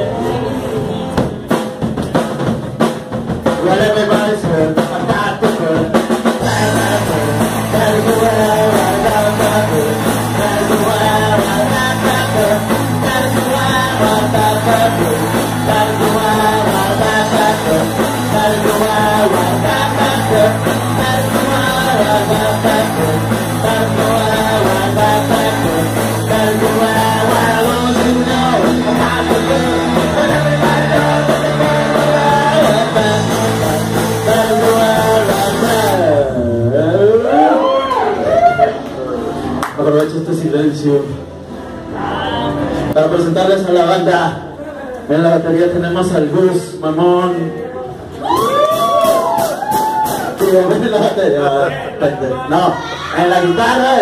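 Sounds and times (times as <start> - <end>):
punk rock band playing: 0.0 - 38.5, 47.9 - 52.0
person singing: 3.4 - 37.9.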